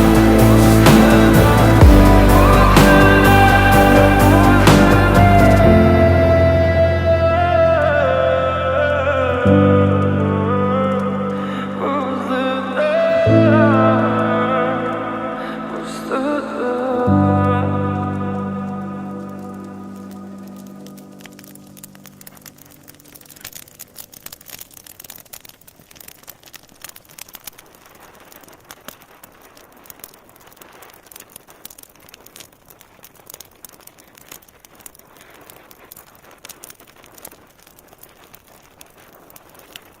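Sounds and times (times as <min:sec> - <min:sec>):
song music: 0:00.0 - 0:22.4
fire popping: 0:00.0 - 0:40.0
fireplace fire crackling: 0:00.0 - 0:40.0.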